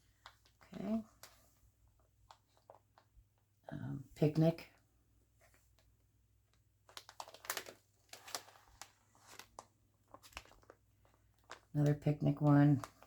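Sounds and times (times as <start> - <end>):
plastic pockets crinkling: 0.0 - 3.5, 6.5 - 13.0.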